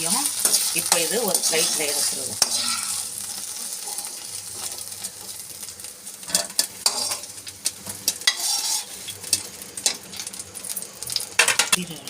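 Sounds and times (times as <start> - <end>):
metal spoon scraping a pan: 0.0 - 5.3, 6.2 - 10.3
okra sizzling in hot oil: 0.0 - 12.0.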